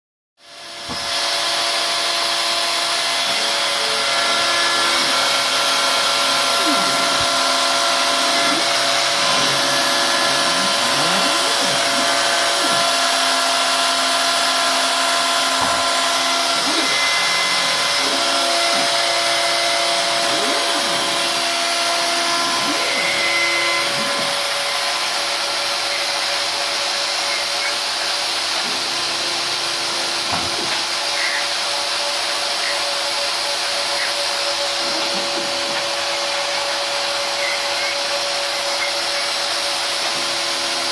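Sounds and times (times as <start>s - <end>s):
axis drives whining: 0.5s - 40.9s.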